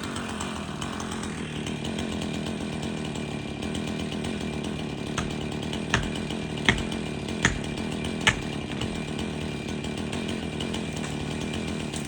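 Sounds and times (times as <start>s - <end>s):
chainsaw idling: 0.0s - 12.0s
hammer striking wedge: 5.2s - 9.3s.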